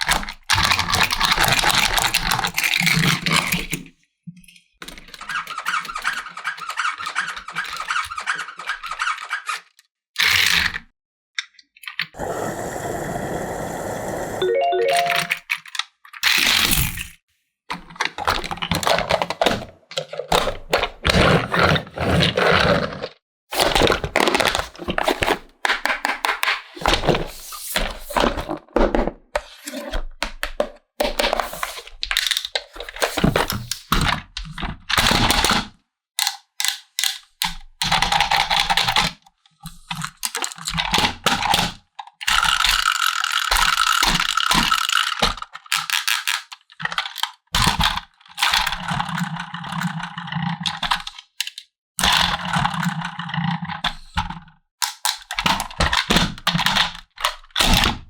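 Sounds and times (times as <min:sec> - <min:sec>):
plastic toy pieces clicking: 0:42.3 - 0:53.5.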